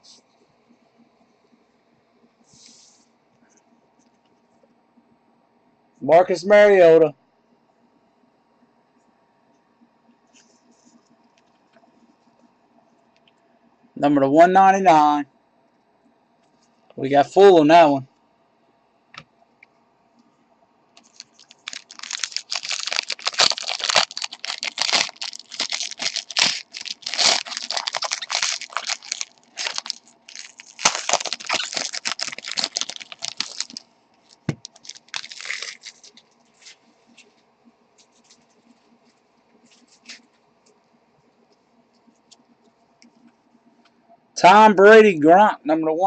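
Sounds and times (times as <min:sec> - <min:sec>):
foil wrappers tearing and crinkling: 0:21.0 - 0:36.8.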